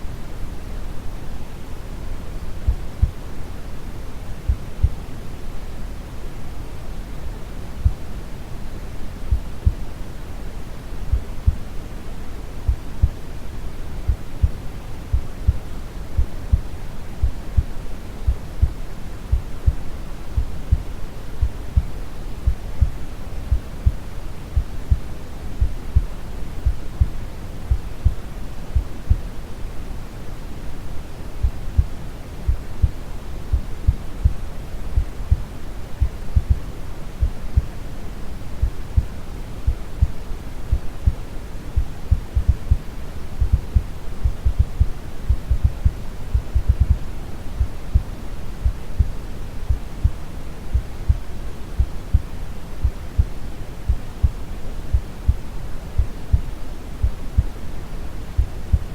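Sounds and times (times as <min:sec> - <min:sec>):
brown noise hiss: 0:00.0 - 0:58.9
heartbeat thumps: 0:02.7 - 0:03.3, 0:04.5 - 0:05.0, 0:07.8 - 0:08.0, 0:09.3 - 0:09.9, 0:11.1 - 0:11.6, 0:12.7 - 0:13.2, 0:14.1 - 0:29.3, 0:31.4 - 0:34.4, 0:35.0 - 0:37.8, 0:38.6 - 0:57.6, 0:58.3 - 0:58.9.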